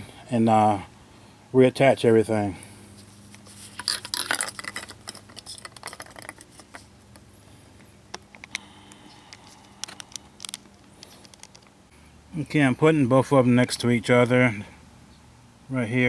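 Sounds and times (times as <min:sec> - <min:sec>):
small parts clicking and rustling: 0:03.0 - 0:11.8.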